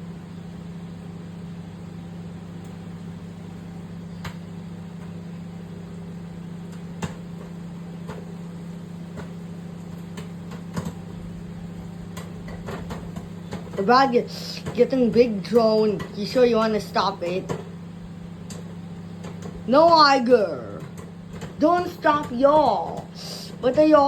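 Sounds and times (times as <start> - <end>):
microwave oven humming: 0.0 - 24.0.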